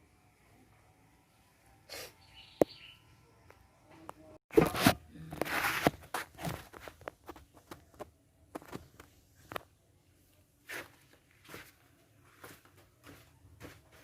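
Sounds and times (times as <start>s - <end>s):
rustling and scraping: 4.5s - 9.7s.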